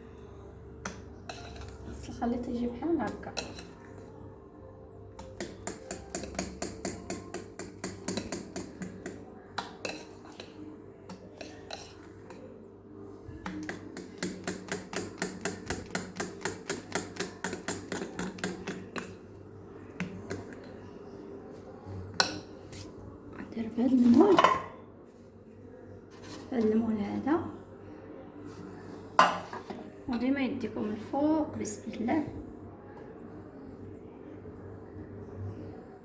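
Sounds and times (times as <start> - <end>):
utensil knocking against mixing bowl: 5.4 - 9.2, 13.5 - 18.9.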